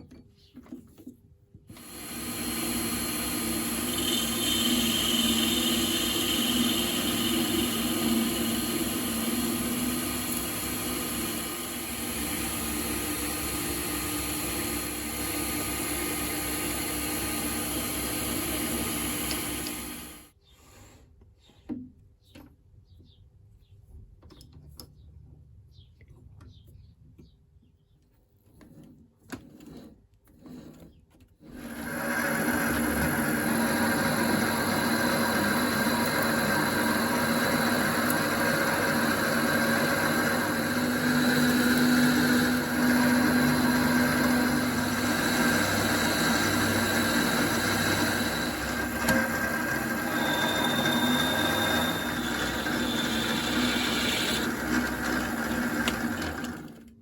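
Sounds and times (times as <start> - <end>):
electric power tool whining: 1.7 - 20.3, 31.5 - 56.9.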